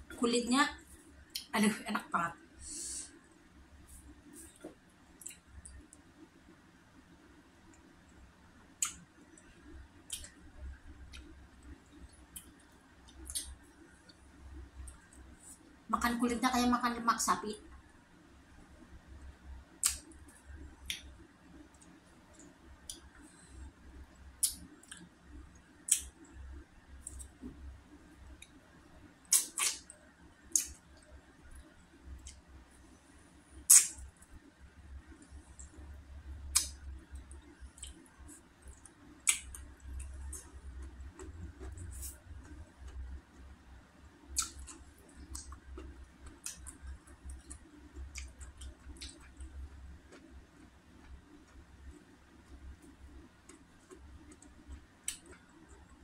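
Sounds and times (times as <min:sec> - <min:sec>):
wet mouth clicks and smacks: 0:19.8 - 0:20.2, 0:24.4 - 0:25.1, 0:25.9 - 0:26.3, 0:27.0 - 0:27.3, 0:29.3 - 0:29.9, 0:30.5 - 0:30.8, 0:33.7 - 0:34.1, 0:36.5 - 0:38.1, 0:44.4 - 0:49.5
wet chewing and sucking: 0:29.3 - 0:29.9.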